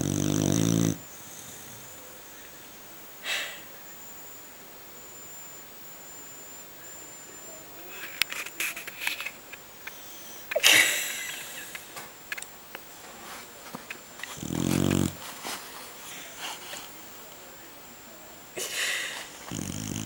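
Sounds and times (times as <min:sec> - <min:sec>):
dog snoring: 0:00.0 - 0:02.0, 0:14.2 - 0:15.3, 0:19.2 - 0:20.0.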